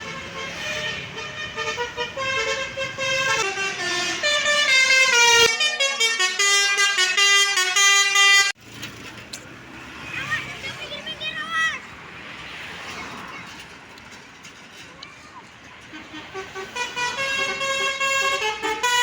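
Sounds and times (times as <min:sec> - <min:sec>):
musical air horn melody: 0:00.0 - 0:08.6, 0:15.9 - 0:19.0
street noise: 0:00.0 - 0:19.0.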